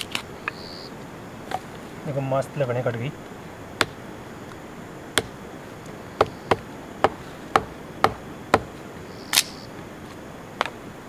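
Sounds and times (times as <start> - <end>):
knife chopping firewood: 3.2 - 9.9.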